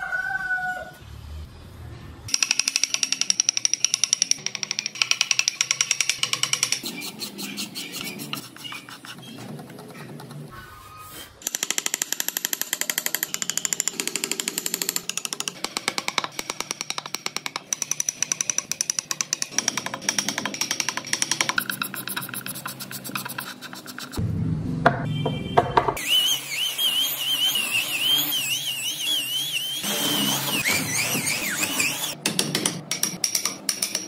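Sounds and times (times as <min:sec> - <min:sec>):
woodworking tool on wood: 0:26.0 - 0:32.2.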